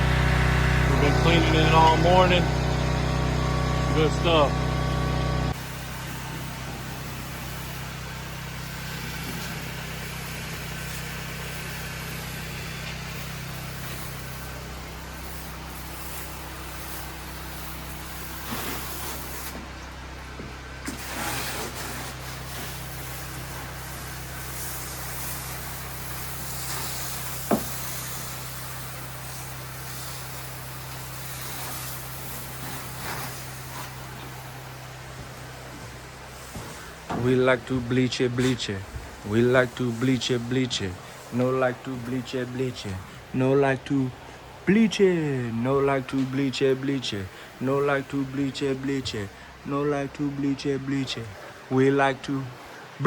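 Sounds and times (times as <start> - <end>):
engine running steadily: 0.0 - 53.0
even hiss: 20.8 - 34.9, 36.2 - 53.0.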